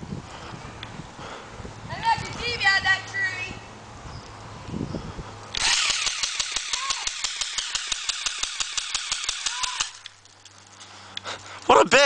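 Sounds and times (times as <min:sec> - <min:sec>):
steady whir: 0:05.5 - 0:11.2
airsoft gun firing full-auto: 0:05.6 - 0:10.0.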